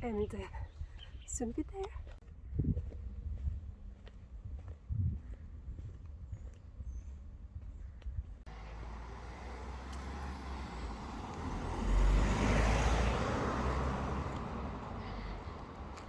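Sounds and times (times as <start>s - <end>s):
car driving past: 8.5s - 16.0s.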